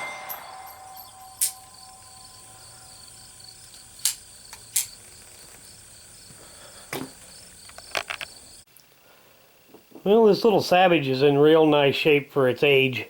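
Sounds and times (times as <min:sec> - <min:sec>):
crickets chirping: 0:00.0 - 0:09.8
sharp clicks and knocks: 0:03.7 - 0:05.6, 0:06.9 - 0:08.3.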